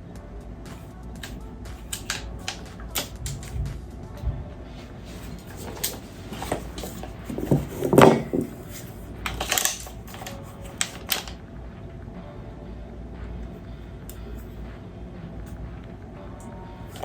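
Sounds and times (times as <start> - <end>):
clicks and knocks of handling: 5.4 - 11.4
clattering knock: 6.5 - 8.7.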